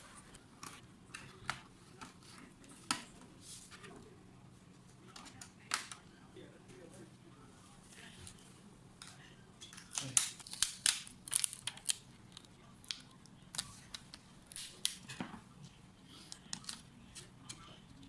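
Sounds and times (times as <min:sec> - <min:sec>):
small laptop parts clicking: 0:09.7 - 0:15.2.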